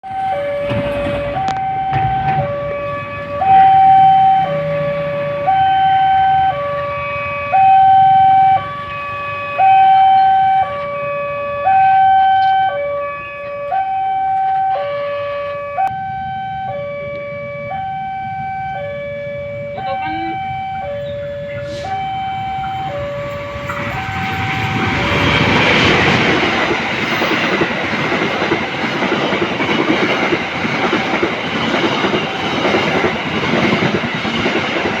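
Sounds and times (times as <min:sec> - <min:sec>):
level crossing two-tone siren: 0:00.0 - 0:27.6.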